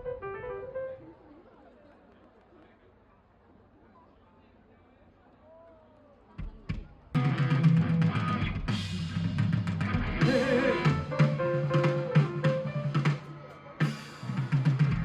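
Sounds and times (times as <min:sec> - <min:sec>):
drum kit: 0:06.4 - 0:15.0
rock band playing live: 0:07.2 - 0:15.0.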